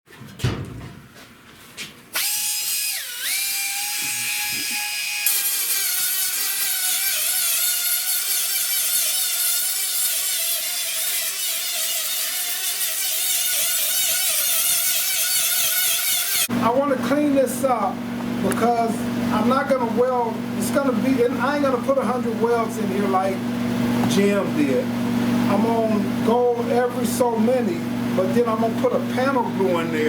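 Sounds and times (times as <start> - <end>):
power grinder whining on metal: 2.2 - 16.5.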